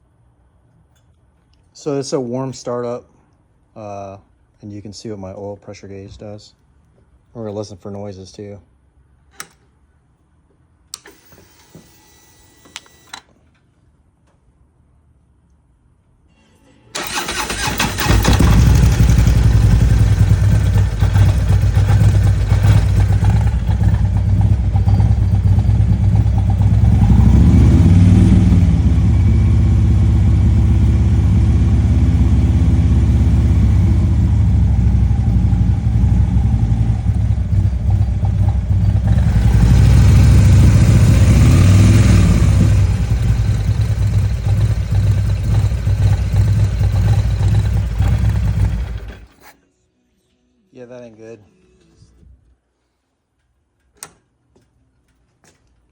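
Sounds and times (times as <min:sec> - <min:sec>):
motorcycle engine idling: 0:17.0 - 0:49.3
motorcycle engine revving: 0:17.0 - 0:49.4
motorcycle engine starting: 0:17.0 - 0:49.6.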